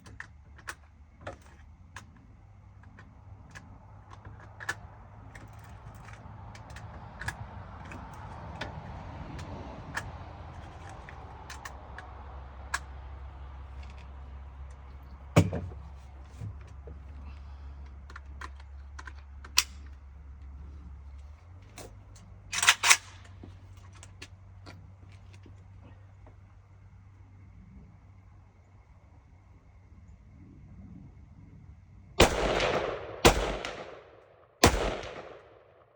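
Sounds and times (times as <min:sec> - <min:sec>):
small clicks and knocks: 0:00.0 - 0:12.9, 0:13.7 - 0:26.4
steady low hum: 0:10.5 - 0:35.9.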